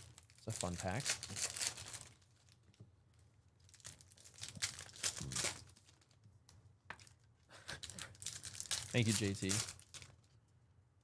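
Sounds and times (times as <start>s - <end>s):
card pack wrappers crinkling and tearing: 0.1s - 2.6s, 3.7s - 6.0s, 7.8s - 10.1s.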